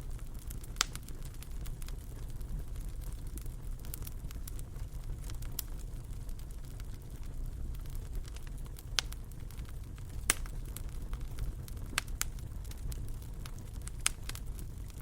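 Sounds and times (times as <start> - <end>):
fire crackling in a fireplace: 0.0 - 15.0
sharp pops and snaps of fire: 0.0 - 15.0.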